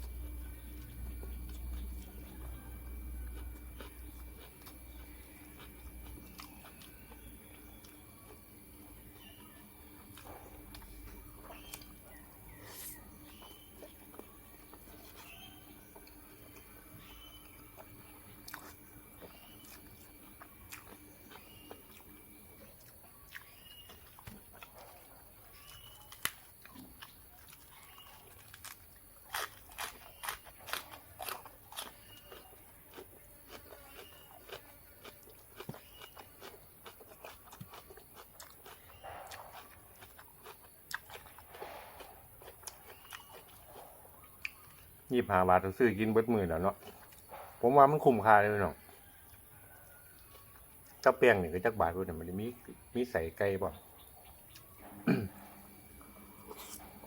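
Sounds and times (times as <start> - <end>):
crunchy food chewing: 0.0 - 57.0.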